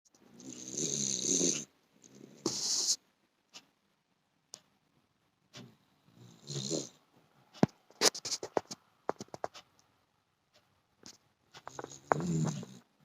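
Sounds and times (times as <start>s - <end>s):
pet snoring: 0.3s - 3.0s, 6.1s - 7.0s, 11.6s - 12.9s.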